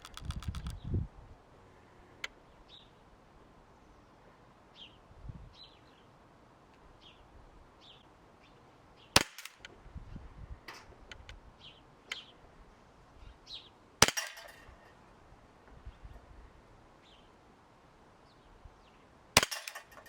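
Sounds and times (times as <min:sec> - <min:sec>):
small click: 0:00.0 - 0:00.8
air pistol shot: 0:09.2 - 0:09.7, 0:14.0 - 0:14.7, 0:19.4 - 0:20.0.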